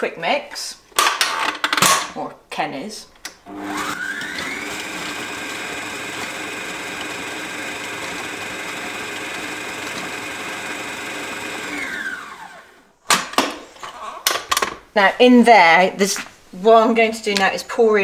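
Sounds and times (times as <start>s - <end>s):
electric mixer motor whining: 3.5s - 12.8s.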